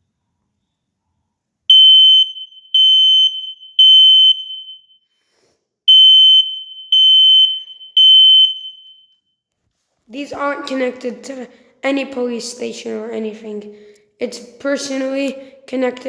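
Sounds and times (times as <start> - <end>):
smoke detector beeping: 1.7 - 4.9, 5.9 - 9.0.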